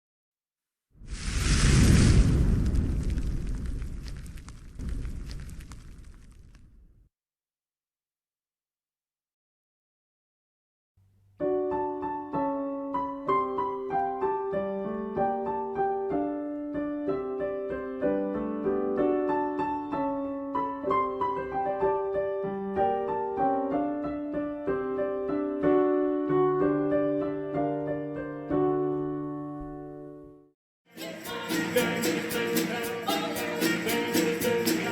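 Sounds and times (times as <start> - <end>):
calm solo piano piece: 11.4 - 30.4.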